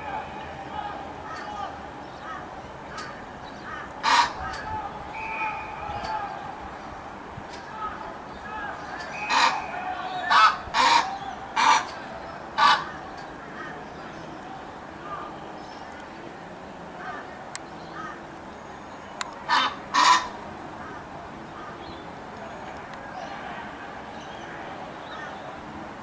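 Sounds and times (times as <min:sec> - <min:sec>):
ibis croaking calls: 0:00.0 - 0:06.2, 0:07.5 - 0:14.4, 0:17.0 - 0:22.6.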